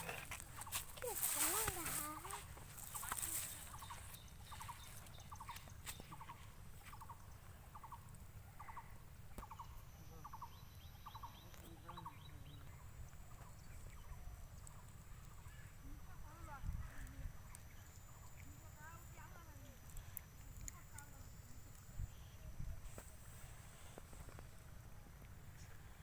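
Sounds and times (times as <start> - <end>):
bird chirping faintly: 0.0 - 19.4.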